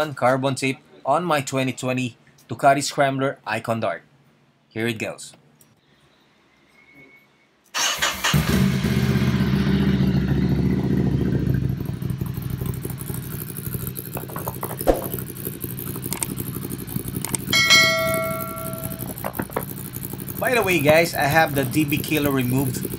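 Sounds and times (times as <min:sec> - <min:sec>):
motorcycle engine starting and idling: 0:07.8 - 0:22.9.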